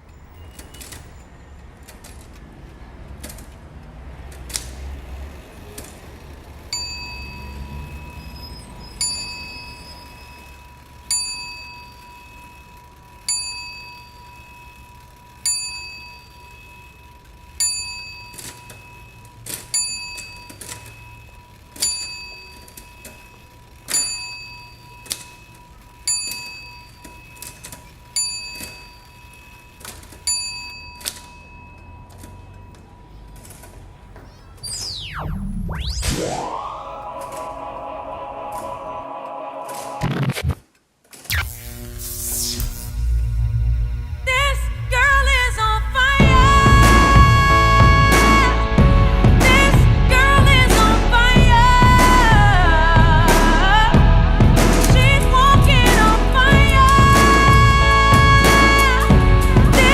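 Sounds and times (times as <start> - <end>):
small bell dinging: 6.7 - 8.4, 9.0 - 33.2
steady high tone: 34.2 - 40.6, 41.3 - 59.9.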